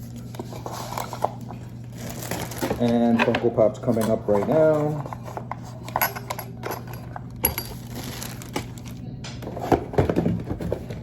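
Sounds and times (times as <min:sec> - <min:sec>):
packaging rustling: 0:00.1 - 0:03.2, 0:07.0 - 0:11.0.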